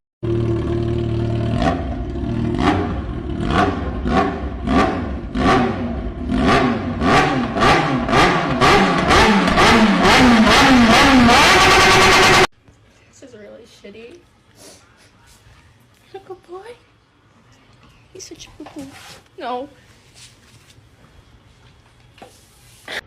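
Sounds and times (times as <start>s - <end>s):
engine revving in sharp blips: 0.2s - 12.5s.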